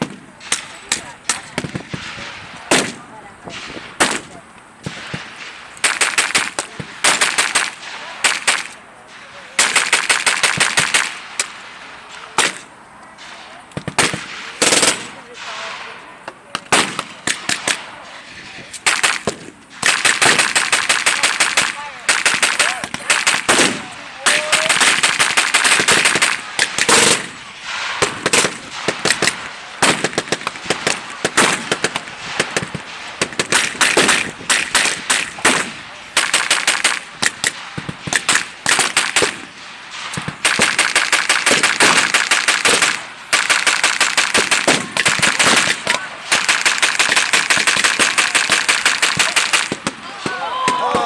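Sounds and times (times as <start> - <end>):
automatic gunfire bursts: 5.8 - 8.8, 9.6 - 11.2, 13.9 - 15.2, 18.8 - 50.0
single rifle shots: 13.8 - 15.8, 16.6 - 18.1, 18.8 - 51.0.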